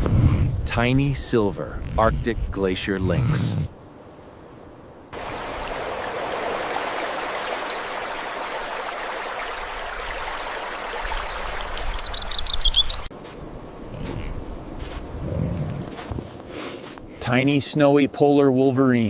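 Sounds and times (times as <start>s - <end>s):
running water rushing: 5.1s - 13.1s
bird chirping: 11.1s - 13.1s.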